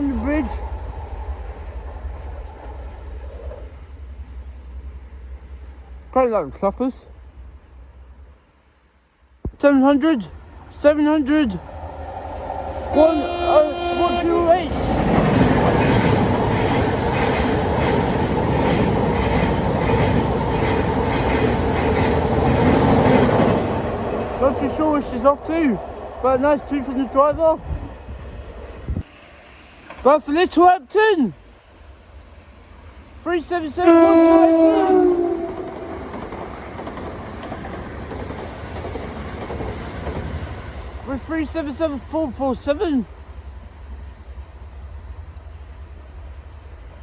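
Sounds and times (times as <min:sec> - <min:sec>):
train wheels rumbling on track: 0:00.0 - 0:08.3, 0:10.2 - 0:47.0
train wheels clattering on track: 0:14.7 - 0:27.2, 0:35.2 - 0:43.7.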